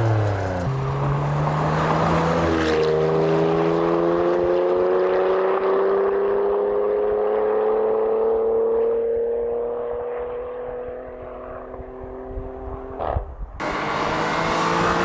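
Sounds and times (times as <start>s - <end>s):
car engine accelerating: 0.0s - 15.0s
gearshift: 13.6s - 15.0s.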